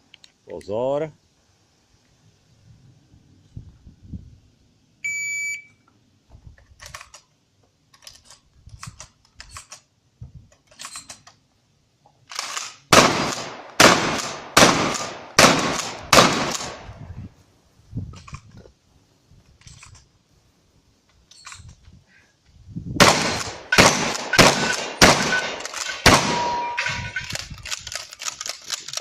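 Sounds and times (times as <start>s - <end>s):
shot timer beep: 5.1s - 5.7s
shotgun shots: 12.3s - 16.9s, 23.0s - 27.3s.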